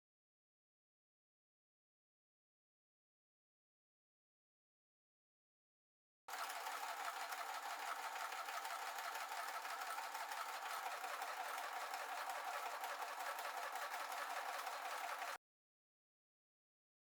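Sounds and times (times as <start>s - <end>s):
small machine rattling: 6.3s - 15.4s.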